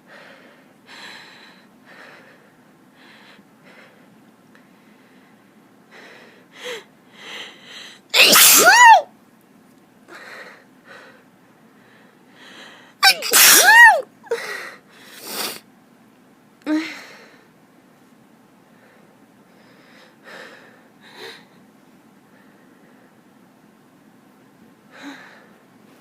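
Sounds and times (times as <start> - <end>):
woman sneezing: 8.1 - 9.1, 13.0 - 14.1.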